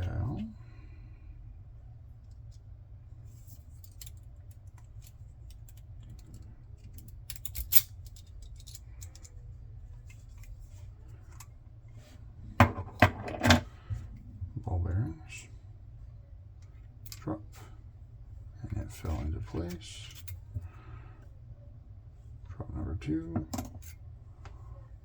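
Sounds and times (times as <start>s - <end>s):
steady low hum: 0.0s - 25.0s
padlock parts clicking and scraping: 3.3s - 11.5s, 19.6s - 20.5s, 23.5s - 24.0s.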